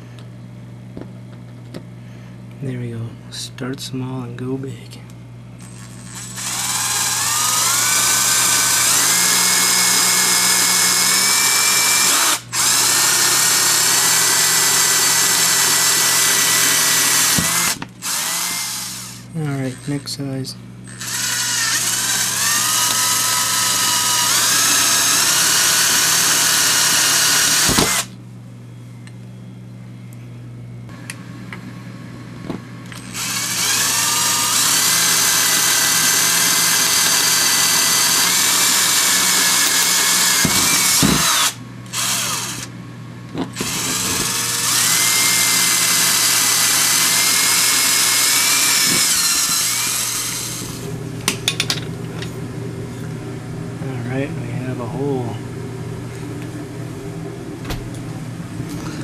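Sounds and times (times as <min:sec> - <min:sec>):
electric drill whining: 0:05.6 - 0:20.2, 0:20.8 - 0:28.1, 0:32.9 - 0:42.7, 0:43.4 - 0:51.6.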